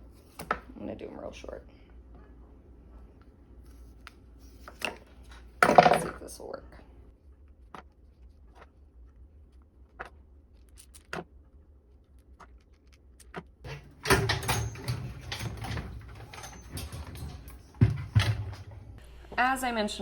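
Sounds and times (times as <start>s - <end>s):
clattering and rustling handling: 13.7s - 19.0s.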